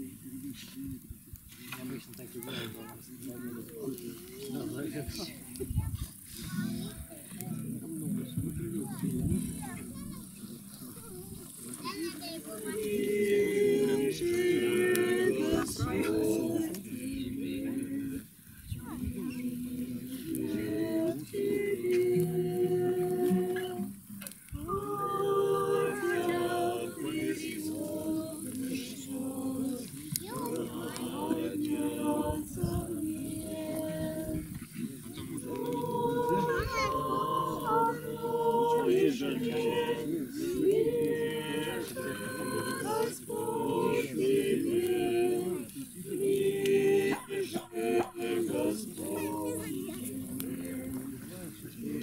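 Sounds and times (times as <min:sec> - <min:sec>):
voices singing slow song: 0:00.0 - 0:02.2, 0:03.5 - 0:52.0.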